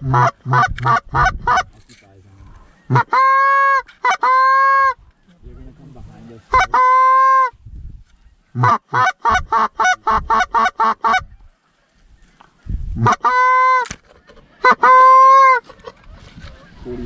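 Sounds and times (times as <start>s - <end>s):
long drawn-out goose call honk: 0.0s - 1.7s, 2.8s - 5.0s, 6.5s - 7.6s, 8.6s - 11.3s, 13.0s - 13.9s, 14.6s - 15.7s
goose call honks and clucks: 0.0s - 1.8s, 2.8s - 5.0s, 6.5s - 7.6s, 8.5s - 11.5s, 13.0s - 16.9s.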